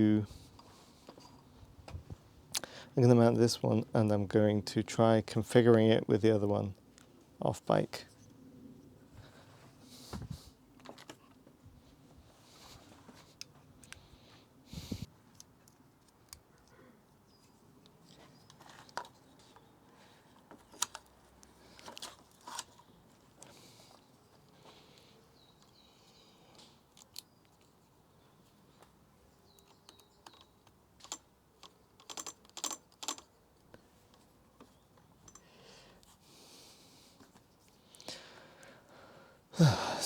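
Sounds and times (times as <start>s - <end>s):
faint clicks of parts handled: 0.5s - 2.7s, 10.1s - 11.6s, 12.6s - 14.5s, 15.1s - 36.2s, 37.2s - 38.7s.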